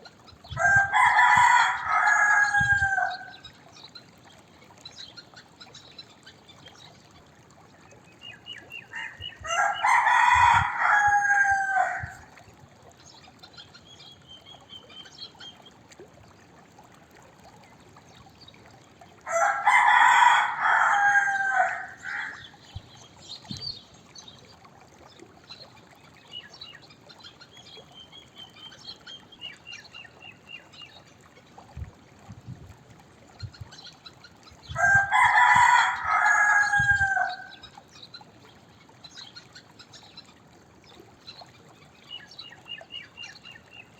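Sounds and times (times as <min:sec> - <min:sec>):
rooster crowing: 0:00.6 - 0:03.4, 0:09.4 - 0:12.2, 0:19.3 - 0:22.4, 0:34.8 - 0:37.5.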